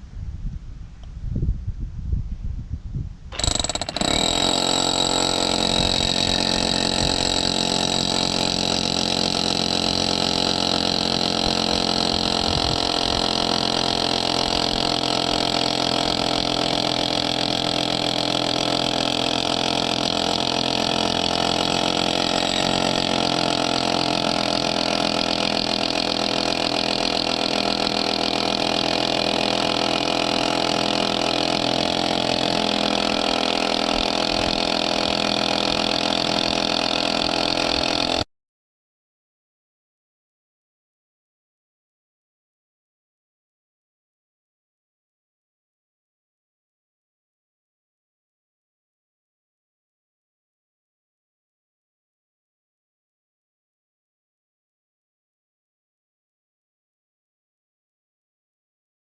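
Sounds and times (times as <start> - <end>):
rotary hammer drilling: 3.3 - 38.3.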